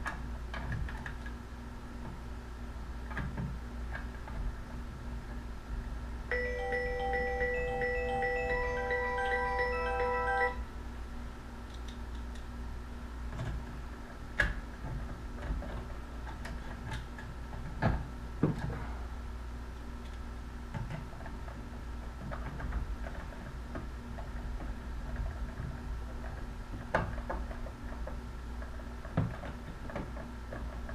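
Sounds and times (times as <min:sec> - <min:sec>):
chiming music cue: 0:06.3 - 0:10.7.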